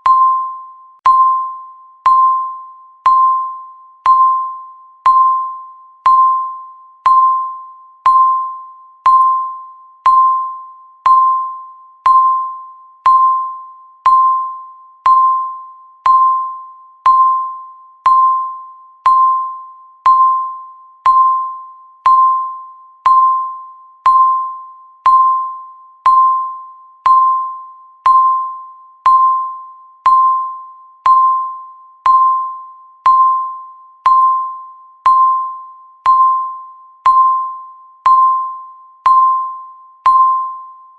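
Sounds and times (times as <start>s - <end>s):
timer ticking pings: 0.0s - 40.9s.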